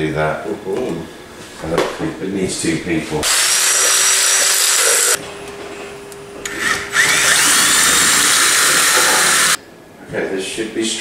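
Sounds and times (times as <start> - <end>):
power drill running: 3.2 - 5.2, 6.4 - 9.6.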